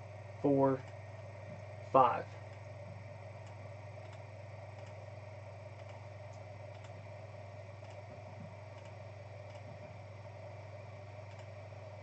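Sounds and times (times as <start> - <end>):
low electrical hum: 0.0 - 12.0
faint clicks: 3.4 - 5.0, 5.7 - 7.0, 7.8 - 9.9, 11.2 - 11.6.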